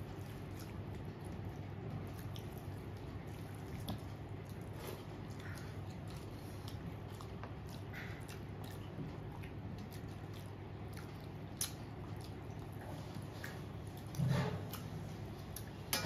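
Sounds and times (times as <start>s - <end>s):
person chewing food: 0.0s - 16.0s
steady low hum: 0.0s - 16.0s
wet mouth clicks and smacks: 5.4s - 12.8s.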